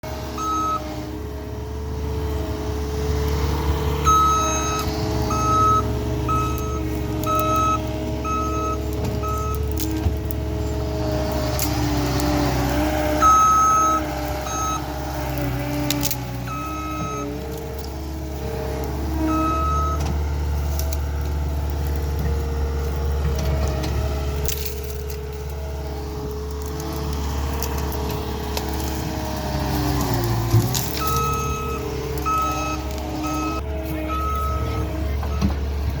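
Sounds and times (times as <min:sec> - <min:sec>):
loader diesel engine running: 0:00.0 - 0:36.0
backup alarm beeping: 0:04.0 - 0:09.7, 0:13.2 - 0:14.9, 0:16.4 - 0:17.4, 0:19.2 - 0:20.0, 0:31.0 - 0:35.6.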